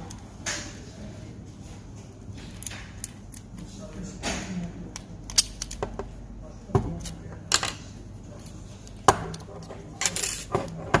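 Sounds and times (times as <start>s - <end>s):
padlock and lock picks clicking: 4.9s - 5.9s.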